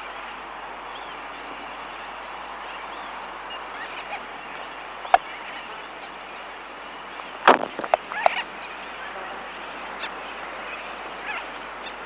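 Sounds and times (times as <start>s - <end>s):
albatross bill clacking: 7.5s - 8.4s.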